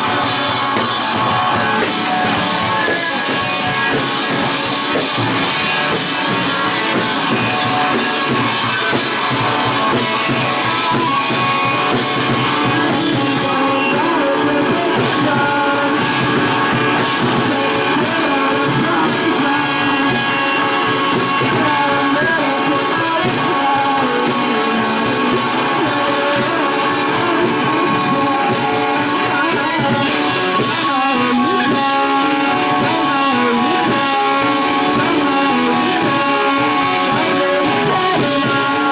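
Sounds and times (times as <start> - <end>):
drum kit: 0.0 - 38.9
electric guitar: 0.0 - 38.9.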